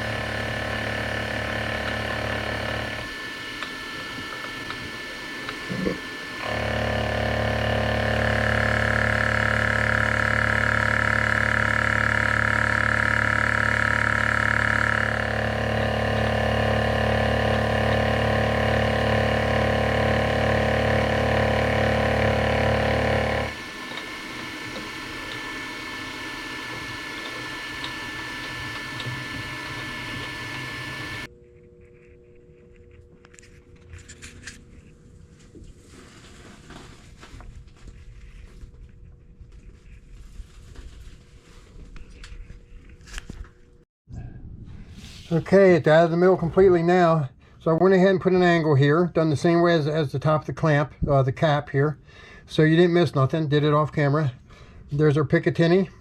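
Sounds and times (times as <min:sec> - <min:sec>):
machine tool motor humming: 0:00.0 - 0:31.3
high-pitched cutting sound: 0:05.5 - 0:31.3.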